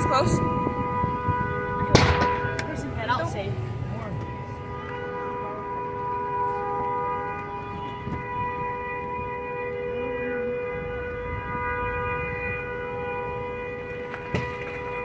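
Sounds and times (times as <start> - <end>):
car horn blaring: 0.0 - 15.0.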